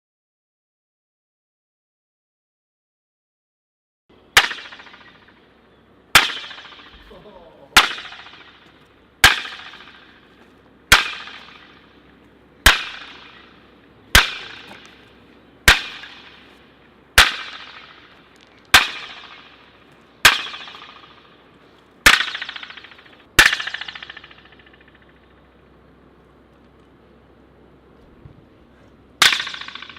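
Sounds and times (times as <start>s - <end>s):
sharp impact with ringing echo: 4.3s - 21.4s, 22.0s - 25.5s, 29.2s - 29.9s.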